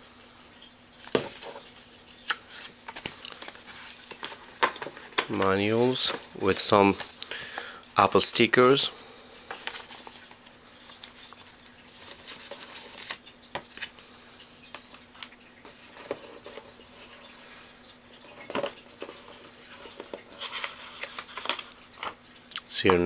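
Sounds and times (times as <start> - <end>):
faint steady hum: 0.0 - 23.0
handling paper and cardboard packaging: 1.0 - 14.0, 18.2 - 22.2.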